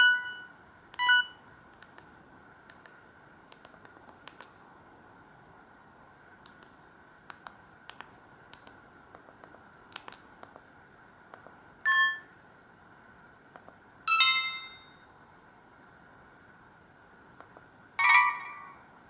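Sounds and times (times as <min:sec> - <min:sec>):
electronic ringtone: 0:00.0 - 0:01.3, 0:11.9 - 0:12.3, 0:18.0 - 0:18.8.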